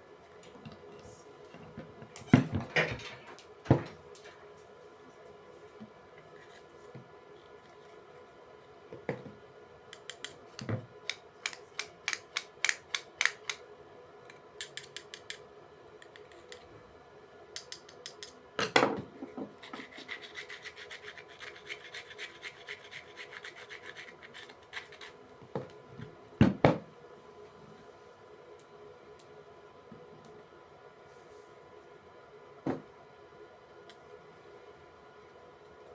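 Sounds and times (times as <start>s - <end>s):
sandpaper rasping on metal: 19.7s - 25.1s.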